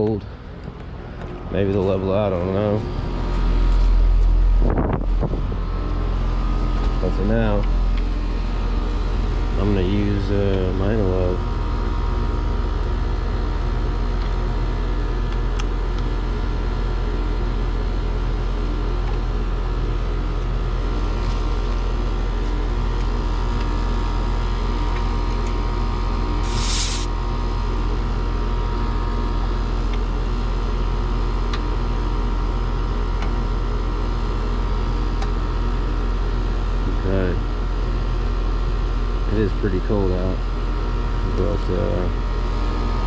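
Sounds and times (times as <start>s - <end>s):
heat pump humming: 0.0s - 43.0s
brief hiss: 26.4s - 27.1s.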